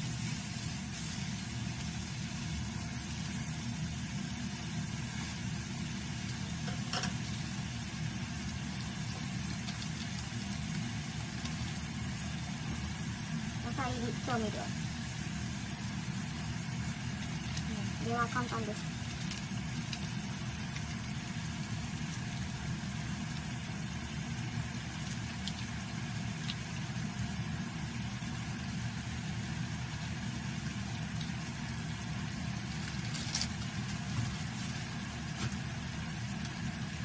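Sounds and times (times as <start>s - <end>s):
food simmering in frying pan: 0.0s - 37.0s.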